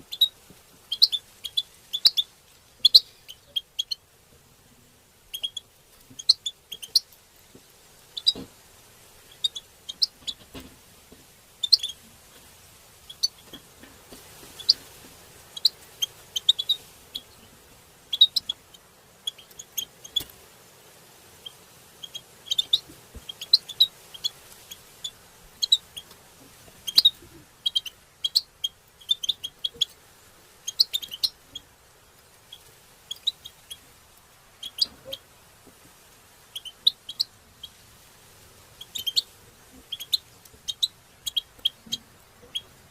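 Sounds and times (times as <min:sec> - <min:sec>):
finch chirping: 0:00.0 - 0:04.0, 0:05.3 - 0:07.2, 0:08.2 - 0:08.5, 0:09.3 - 0:10.4, 0:11.6 - 0:12.0, 0:13.1 - 0:13.6, 0:14.4 - 0:14.8, 0:15.5 - 0:17.5, 0:18.1 - 0:20.3, 0:21.4 - 0:26.1, 0:26.8 - 0:30.0, 0:30.6 - 0:31.7, 0:32.4 - 0:33.9, 0:34.6 - 0:35.2, 0:36.5 - 0:37.8, 0:38.7 - 0:42.9.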